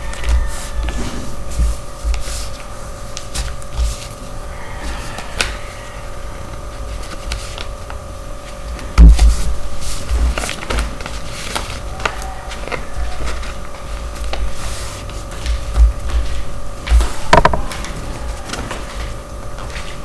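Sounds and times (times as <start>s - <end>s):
steady hum: 0.0s - 20.0s
dull knocks: 15.6s - 17.9s.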